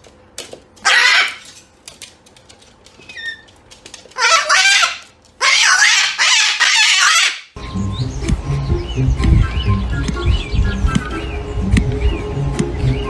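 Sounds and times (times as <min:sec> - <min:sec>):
fowl squawking: 0:00.9 - 0:01.5, 0:04.2 - 0:07.6.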